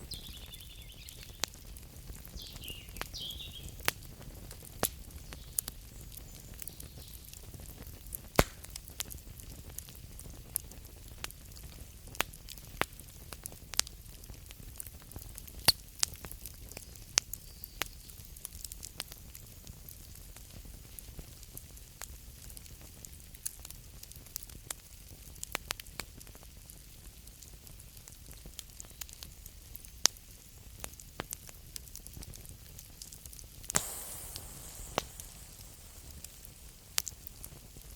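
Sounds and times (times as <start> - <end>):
campfire crackling and popping: 0.1 - 17.3, 21.6 - 37.9
low fire rumble: 33.6 - 37.9
soft hiss: 33.7 - 37.9.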